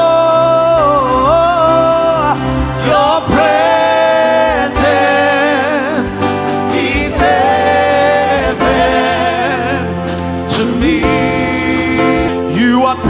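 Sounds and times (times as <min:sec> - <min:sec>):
gospel choir singing: 0:00.0 - 0:13.0
musical accompaniment: 0:00.0 - 0:13.0.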